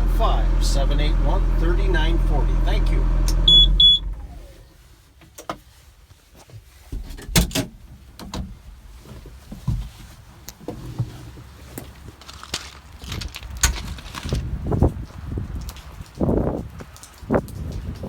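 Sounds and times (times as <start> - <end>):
diesel engine shutting off: 0.0 - 4.9
short high beep: 1.9 - 4.1.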